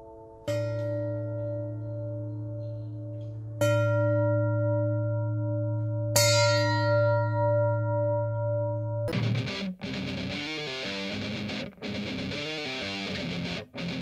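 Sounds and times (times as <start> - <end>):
metal bell struck: 0.0 - 9.2.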